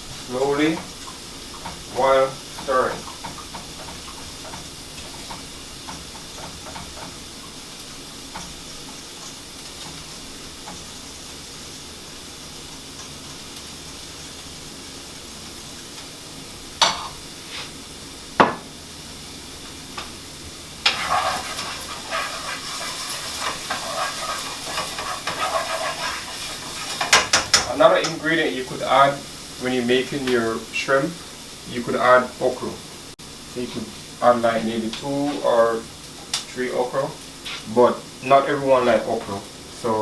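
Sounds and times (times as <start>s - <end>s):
food sizzling on stove: 0.0s - 40.0s
spoon stirring and scraping pot: 20.8s - 28.2s
utensil knocking against pot: 20.9s - 28.2s.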